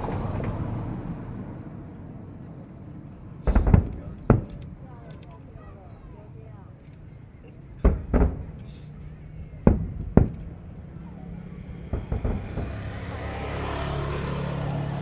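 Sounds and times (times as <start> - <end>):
firework shells bursting: 2.5 - 6.2, 6.8 - 15.0
small firework cracks: 3.4 - 6.2, 7.7 - 15.0.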